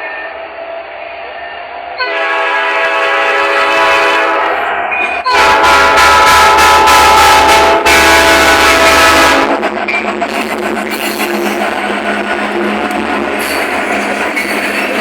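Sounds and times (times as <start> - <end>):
train horn blasts: 2.0 - 4.6, 5.2 - 9.6.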